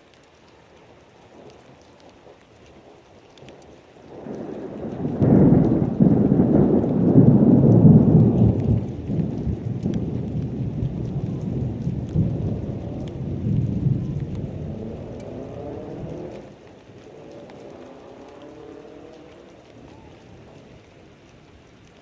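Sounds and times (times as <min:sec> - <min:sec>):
steady rain: 0:00.0 - 0:22.0
thunder rolling: 0:04.1 - 0:21.2.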